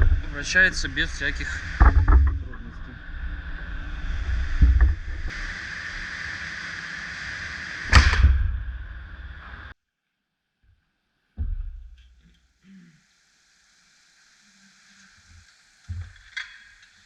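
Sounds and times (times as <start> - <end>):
steady high whine: 0.0 - 9.8.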